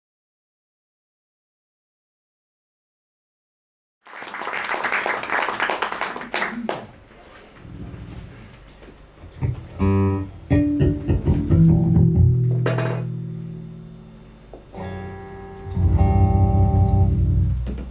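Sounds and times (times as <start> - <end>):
sustained low notes: 9.2 - 17.9
plucked guitar notes: 9.4 - 17.9.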